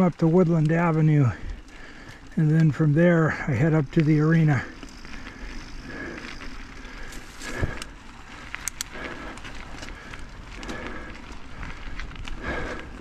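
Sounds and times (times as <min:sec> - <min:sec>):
bike tyre and drivetrain noise: 0:00.0 - 0:13.0
bike clicks and knocks: 0:03.9 - 0:13.0.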